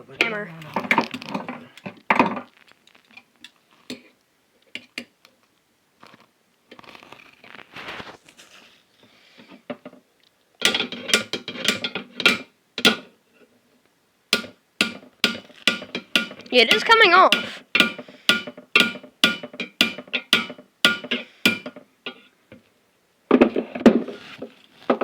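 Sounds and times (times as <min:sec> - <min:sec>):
scraping: 0:06.0 - 0:08.8
hammer tapping on pliers: 0:14.3 - 0:21.8.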